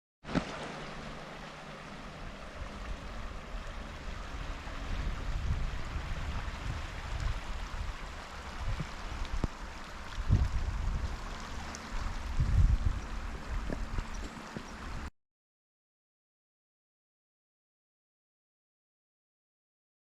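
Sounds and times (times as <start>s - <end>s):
gusts buffeting microphone: 2.6s - 15.1s
storm wind blowing: 3.8s - 11.3s, 11.9s - 14.2s.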